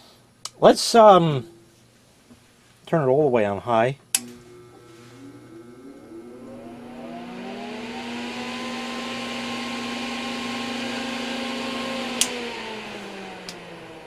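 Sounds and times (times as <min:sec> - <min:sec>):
extractor fan humming: 0:00.0 - 0:14.0
sharp click: 0:04.1 - 0:04.4.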